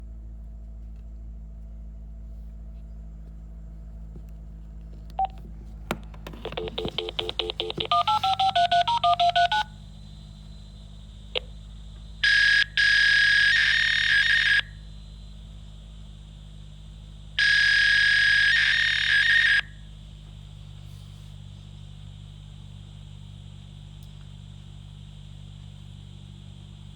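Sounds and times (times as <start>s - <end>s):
low line hum: 0.0s - 26.9s
phone keypad tones: 5.1s - 5.5s, 6.2s - 9.7s
fax handshake tones: 5.1s - 10.5s, 11.3s - 14.8s, 17.4s - 19.8s.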